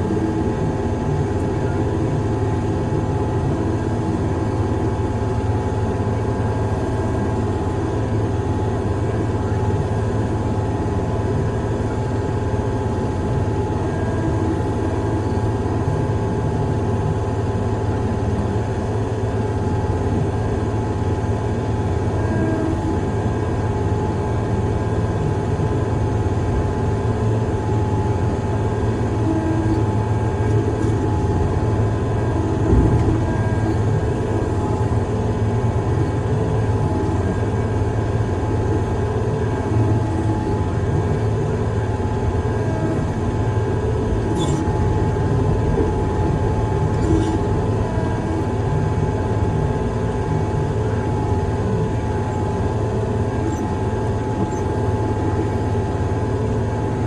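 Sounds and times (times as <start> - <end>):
heavy machine engine droning: 0.0 - 57.0.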